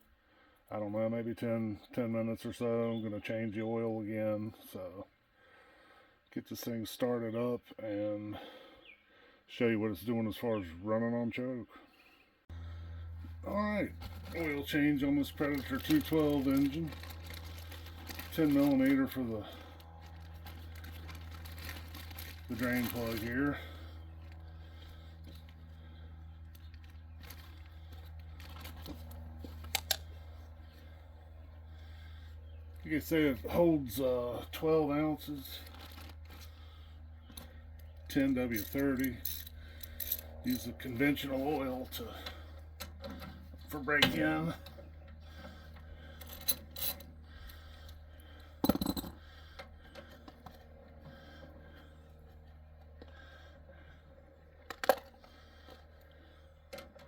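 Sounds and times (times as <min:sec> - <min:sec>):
steady low hum: 0:11.7 - 0:57.0
wrench clicks and scrapes: 0:38.5 - 0:40.8.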